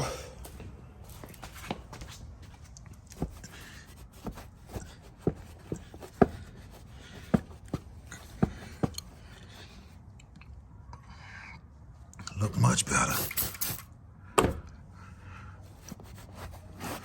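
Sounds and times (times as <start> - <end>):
rag rubbing: 3.0 - 9.9, 15.7 - 17.0.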